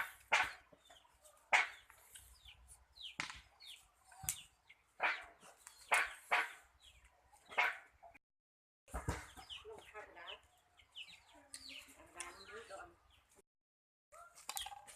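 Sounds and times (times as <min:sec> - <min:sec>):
dog barking: 0:05.0 - 0:06.6, 0:07.5 - 0:07.9.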